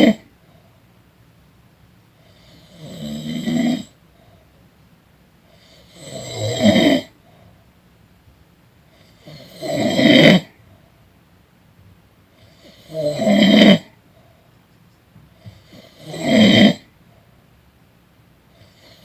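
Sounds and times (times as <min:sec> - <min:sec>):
person snoring: 0:02.3 - 0:04.0, 0:05.7 - 0:07.1, 0:09.2 - 0:10.6, 0:12.6 - 0:13.9, 0:15.6 - 0:16.9.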